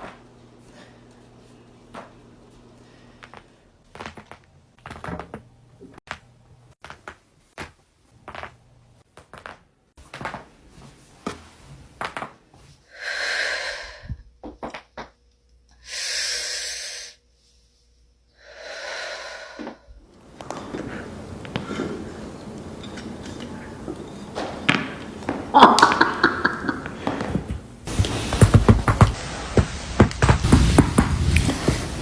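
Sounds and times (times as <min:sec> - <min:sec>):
heavy breaths: 0:12.9 - 0:14.2, 0:27.3 - 0:29.2.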